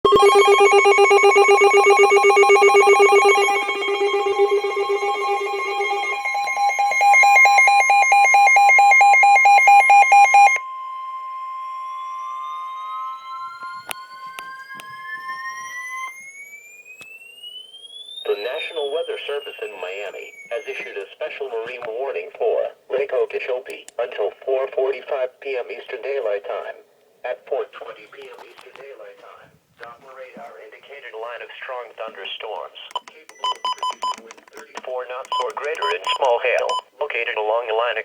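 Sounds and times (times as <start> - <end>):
pulsing electronic alert tones: 0.0 - 10.6
tone sweeping upward in pitch: 0.0 - 20.8
steady high alarm tone: 0.0 - 21.0, 33.2 - 36.8.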